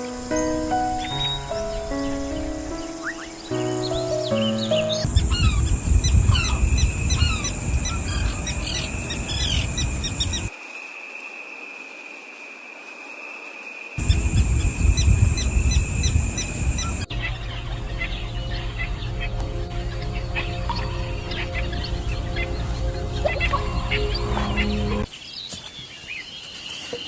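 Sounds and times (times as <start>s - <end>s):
small birds chirping: 0.2s - 10.5s, 14.0s - 27.0s
low rumble: 5.1s - 10.5s, 14.0s - 25.1s.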